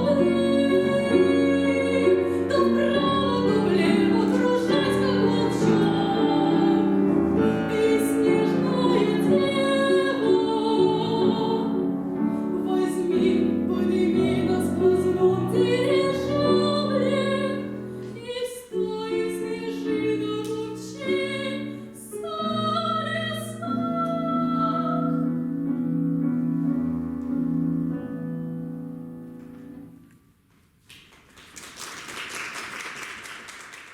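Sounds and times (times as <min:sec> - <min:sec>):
woman singing classical piece: 0:00.0 - 0:26.5
piano accompaniment: 0:00.0 - 0:30.8.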